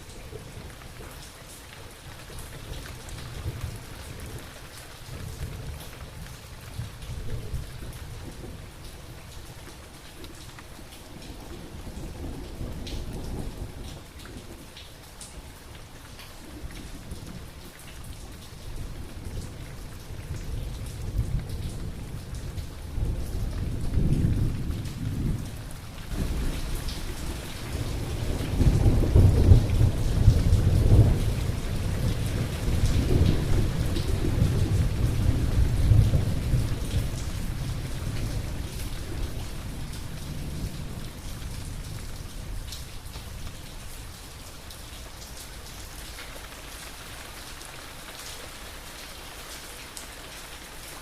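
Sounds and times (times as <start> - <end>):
steady rain: 0.0 - 51.0
rolling thunder: 20.5 - 42.8.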